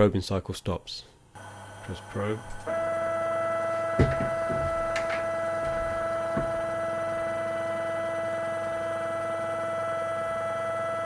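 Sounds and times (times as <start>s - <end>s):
stepper motors whining: 1.4s - 11.0s
soft knock: 4.0s - 6.7s.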